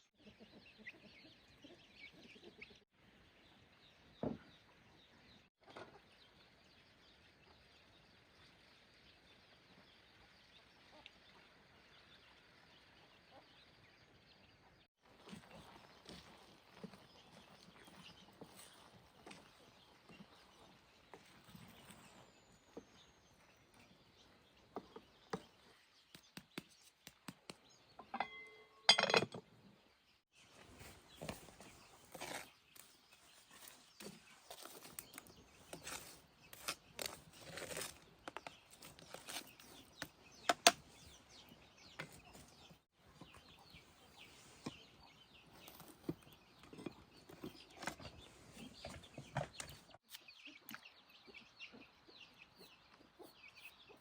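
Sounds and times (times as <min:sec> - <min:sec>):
chickens clucking: 0:00.2 - 0:02.8.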